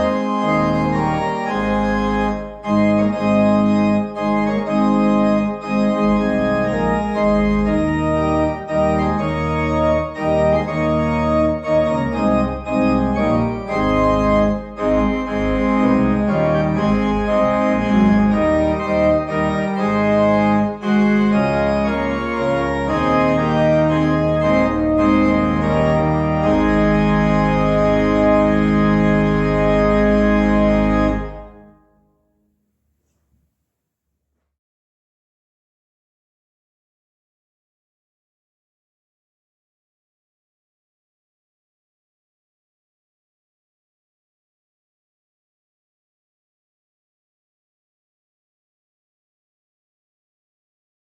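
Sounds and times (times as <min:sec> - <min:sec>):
church organ playing: 0:00.0 - 0:32.0.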